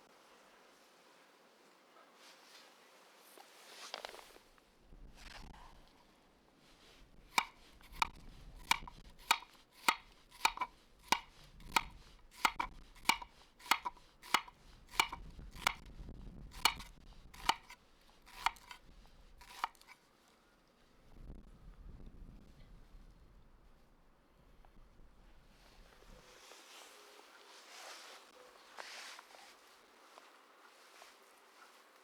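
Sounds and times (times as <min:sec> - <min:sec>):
knife slicing on cutting board: 0:07.3 - 0:15.8, 0:16.5 - 0:20.0.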